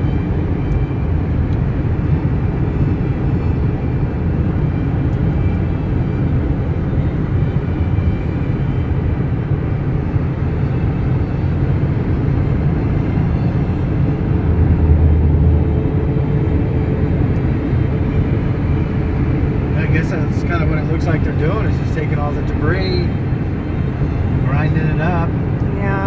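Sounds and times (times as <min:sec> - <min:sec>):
pickup engine and tyre rumble: 0:00.0 - 0:26.0.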